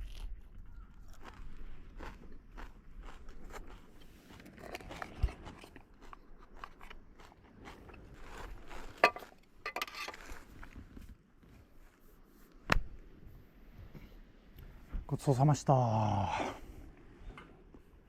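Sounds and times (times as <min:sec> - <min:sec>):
person chewing food: 0:00.0 - 0:11.0.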